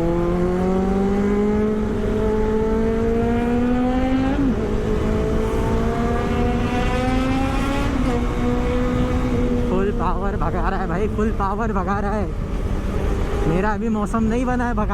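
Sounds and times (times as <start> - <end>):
motorcycle engine accelerating: 0.0 - 10.9
wind rush: 0.0 - 14.9.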